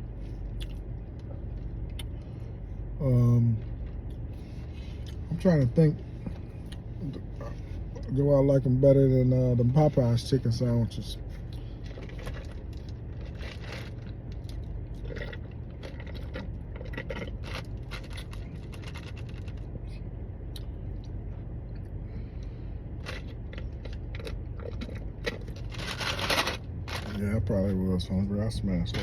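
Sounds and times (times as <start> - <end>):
low hum: 0.0 - 29.0
chewing crispy food: 11.4 - 22.0, 23.0 - 27.2
rustling: 24.8 - 27.2.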